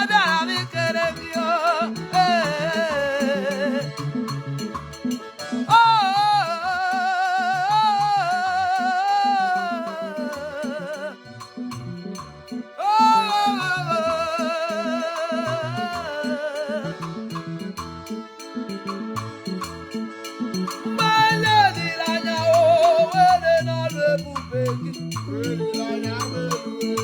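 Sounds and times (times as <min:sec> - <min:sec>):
rhythmic backing with percussion and bass: 0:00.0 - 0:27.0
solo voice singing with vibrato: 0:05.7 - 0:11.2, 0:12.8 - 0:16.9, 0:21.0 - 0:24.7.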